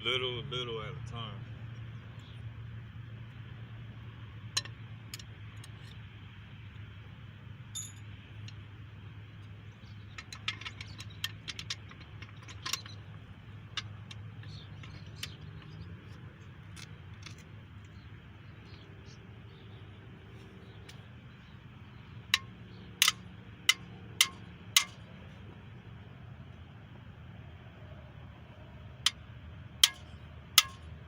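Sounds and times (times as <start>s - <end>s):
hammer tapping metal tool: 22.4s - 25.0s, 29.8s - 30.8s.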